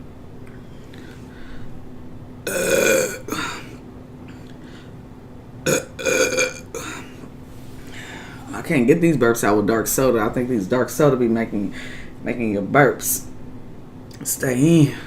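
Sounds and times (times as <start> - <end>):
person burping: 2.4 - 3.8, 5.6 - 7.2.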